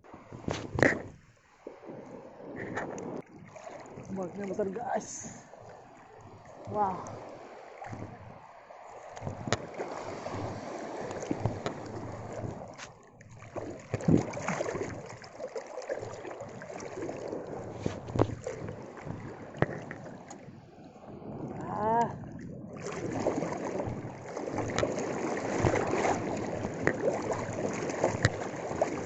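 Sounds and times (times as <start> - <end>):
waves sloshing in shallow water: 0.0 - 29.0
wind buffeting microphone: 9.2 - 12.9, 13.7 - 15.3, 16.0 - 29.0
sharp knocks or splashes: 9.2 - 20.4, 22.8 - 29.0.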